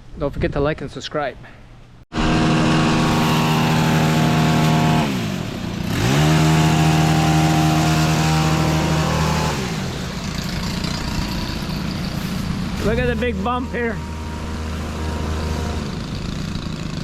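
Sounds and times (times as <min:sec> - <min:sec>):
hedge trimmer engine running: 0:02.1 - 0:17.0.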